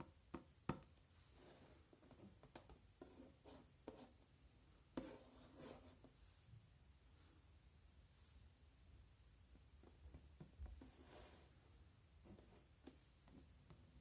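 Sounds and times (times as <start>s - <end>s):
soft rubbing: 1.1s - 2.4s, 5.0s - 8.6s, 10.4s - 13.6s.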